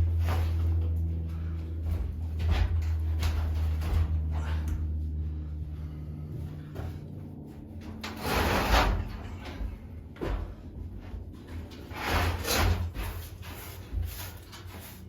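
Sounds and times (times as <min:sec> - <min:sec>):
low steady hum: 0:00.0 - 0:15.0
broom scraping floor: 0:08.1 - 0:09.8, 0:11.5 - 0:15.0.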